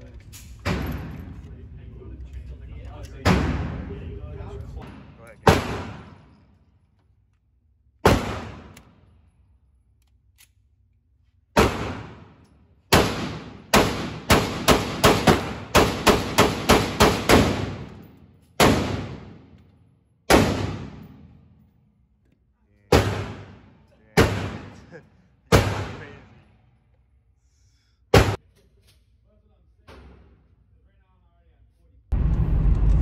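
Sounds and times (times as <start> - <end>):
pistol shots with ringing echo: 20.3 - 21.2.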